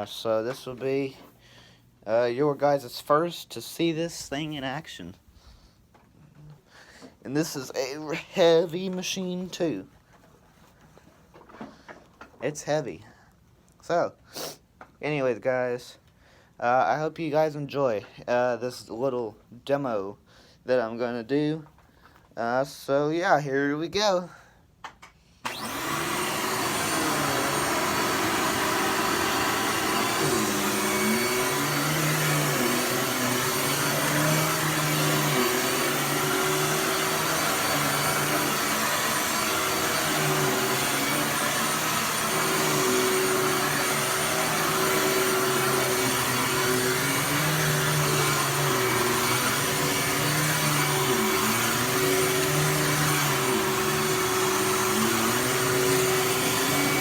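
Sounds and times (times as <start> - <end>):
vacuum cleaner motor whining: 25.4 - 57.0.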